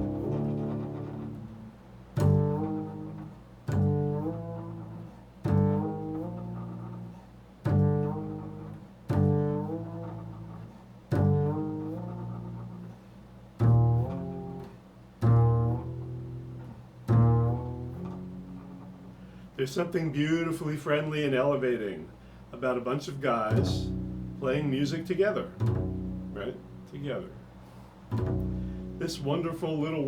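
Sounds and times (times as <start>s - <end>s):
low string instrument notes: 0.0s - 30.0s.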